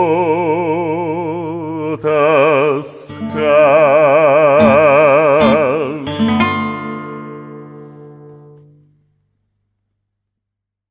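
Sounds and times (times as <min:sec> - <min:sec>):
man singing with vibrato: 0:00.0 - 0:07.8
acoustic guitar: 0:00.0 - 0:09.2.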